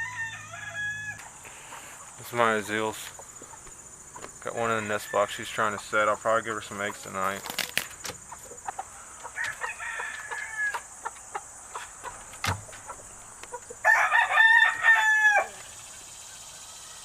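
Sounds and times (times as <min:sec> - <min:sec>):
rooster crowing: 0:00.0 - 0:01.3, 0:09.0 - 0:10.9, 0:13.8 - 0:15.6.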